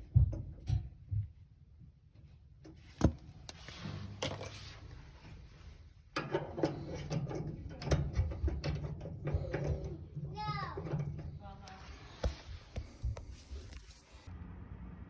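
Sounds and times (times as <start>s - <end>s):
dryer panels knocking and rattling: 0.0s - 1.5s, 2.8s - 12.7s.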